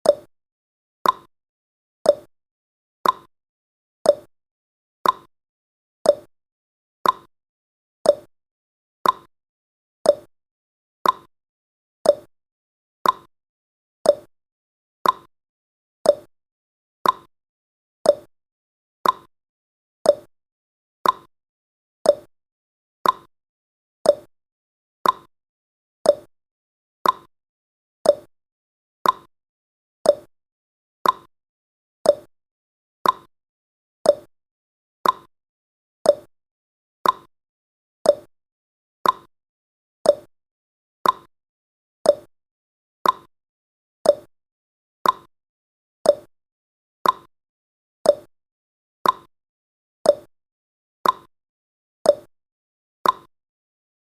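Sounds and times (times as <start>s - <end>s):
clock ticking: 9.0s - 9.3s, 33.0s - 33.3s, 35.0s - 35.3s, 37.0s - 37.3s, 39.0s - 39.3s, 41.0s - 41.3s, 43.0s - 43.3s, 45.0s - 45.3s, 47.0s - 47.3s, 49.0s - 49.3s, 51.0s - 51.3s, 53.0s - 53.3s.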